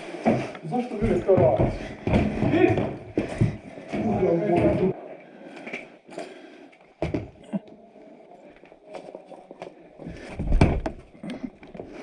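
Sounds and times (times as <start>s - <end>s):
footsteps: 0.0s - 7.6s, 8.5s - 12.0s.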